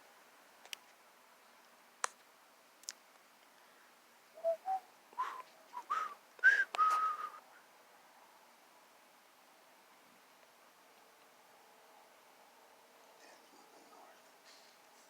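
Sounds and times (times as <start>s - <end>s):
person whistling rising notes: 4.4s - 7.4s.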